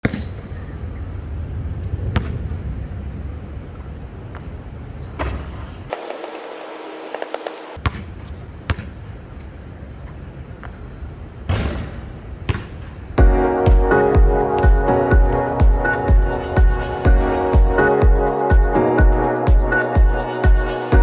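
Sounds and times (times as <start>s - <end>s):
basketball bouncing on court: 0.0s - 0.6s, 2.1s - 2.5s, 4.3s - 9.0s, 11.5s - 17.8s
steady low rumble: 13.2s - 21.0s.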